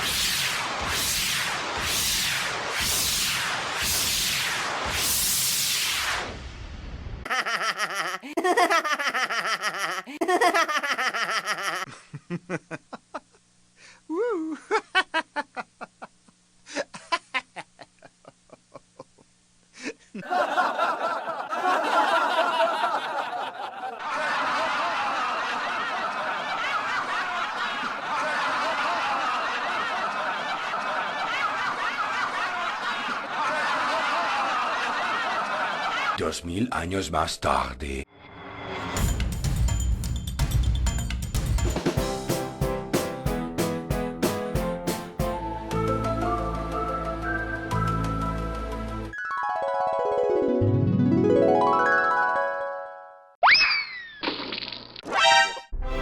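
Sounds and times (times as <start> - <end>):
hiss: 0.0 - 6.8
group of people laughing: 7.3 - 13.4, 16.7 - 36.2.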